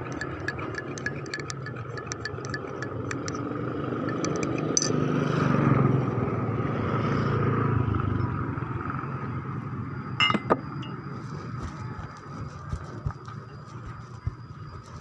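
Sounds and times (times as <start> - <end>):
sharp clinks: 0.0 - 5.0, 10.2 - 11.0
vehicle engine running: 8.4 - 15.0.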